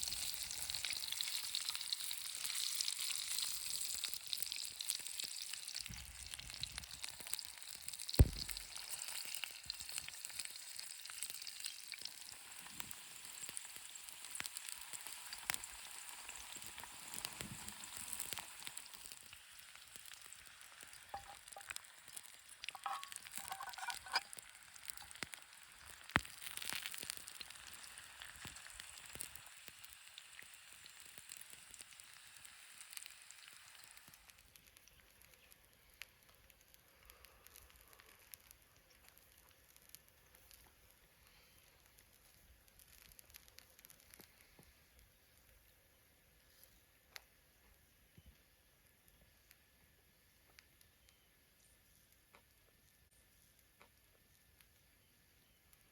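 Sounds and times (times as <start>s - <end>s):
food sizzling in hot oil: 0.0s - 34.9s.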